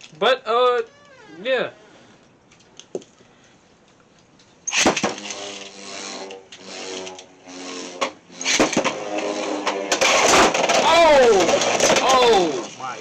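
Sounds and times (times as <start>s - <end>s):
tops launched into plastic stadium: 4.7s - 5.4s, 8.0s - 12.5s
spinning tops whirring: 4.7s - 12.9s
spinning tops clashing: 8.0s - 12.5s.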